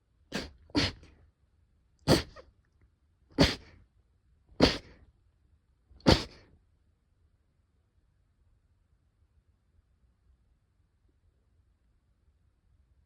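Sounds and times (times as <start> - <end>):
person sneezing: 0.3 - 1.1, 2.1 - 2.4, 3.4 - 3.8, 4.6 - 5.0, 6.0 - 6.5.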